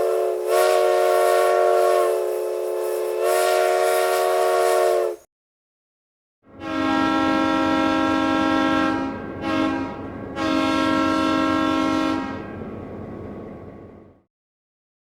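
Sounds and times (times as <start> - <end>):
train air horn: 0.0 - 5.3, 6.5 - 14.0
low train rumble: 6.5 - 14.3.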